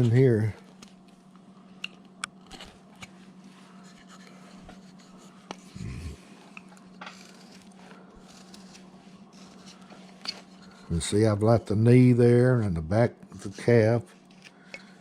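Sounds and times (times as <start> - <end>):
steady low hum: 0.0 - 15.0
carving tool scraping wood: 3.8 - 5.7, 7.1 - 10.9.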